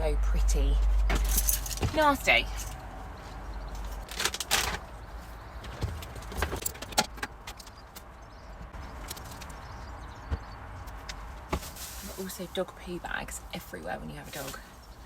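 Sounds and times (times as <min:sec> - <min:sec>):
small items rattling: 0:03.8 - 0:06.9.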